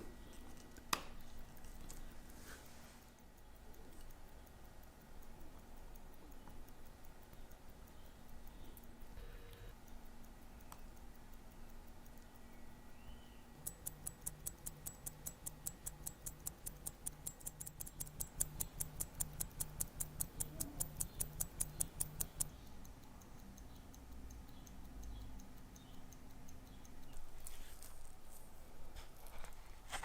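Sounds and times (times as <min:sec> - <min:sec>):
watch movement ticking: 0:01.2 - 0:30.0.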